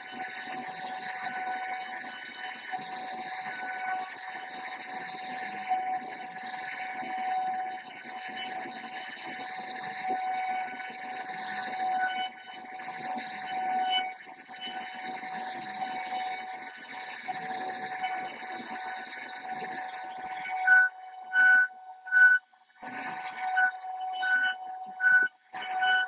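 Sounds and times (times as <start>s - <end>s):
router spindle whining: 19.8s - 26.0s.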